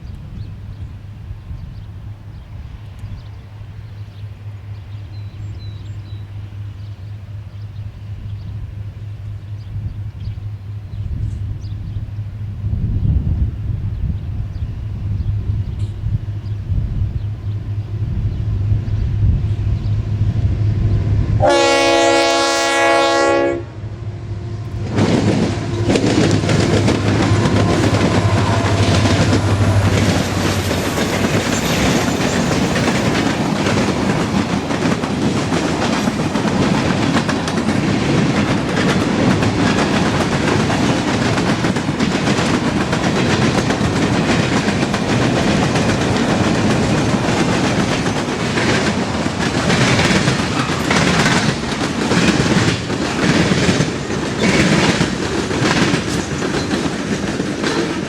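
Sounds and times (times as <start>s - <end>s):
locomotive engine drone: 0.1s - 57.2s
locomotive horn blast: 21.3s - 31.4s
freight cars clattering on rails: 24.7s - 58.0s.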